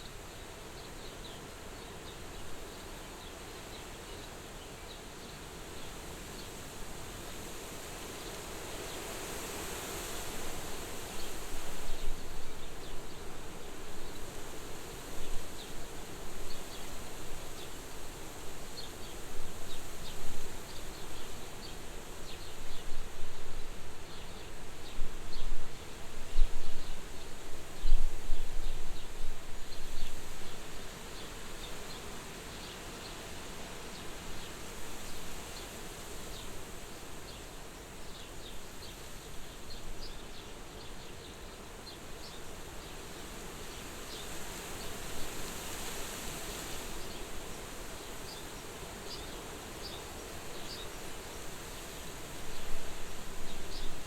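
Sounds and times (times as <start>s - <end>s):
wind blowing at a window: 6.2s - 40.5s.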